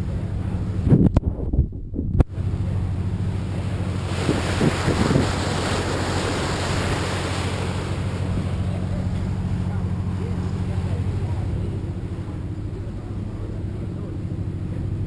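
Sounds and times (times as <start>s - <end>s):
boat engine humming: 0.0s - 15.0s
wind noise on microphone: 0.4s - 2.4s, 4.1s - 5.8s
rushing water: 2.3s - 15.0s.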